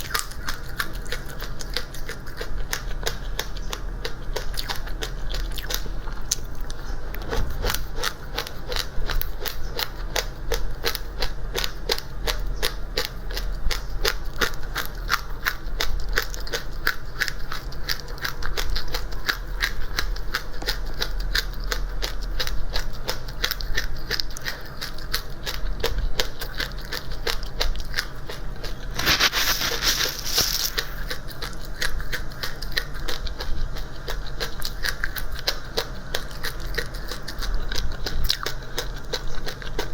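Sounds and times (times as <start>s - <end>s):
chewing crunchy seeds: 0.0s - 39.9s
hissing rustle: 28.9s - 31.0s.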